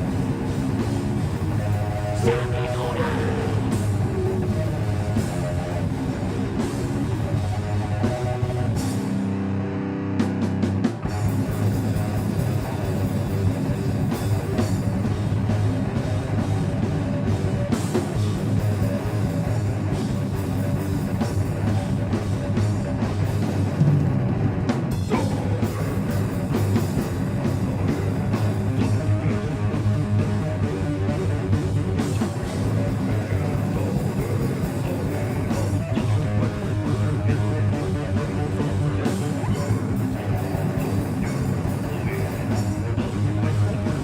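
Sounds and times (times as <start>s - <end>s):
bass guitar: 0.0s - 44.0s
distorted electric guitars: 0.0s - 44.0s
rapid drumming on drum kit: 11.0s - 44.0s.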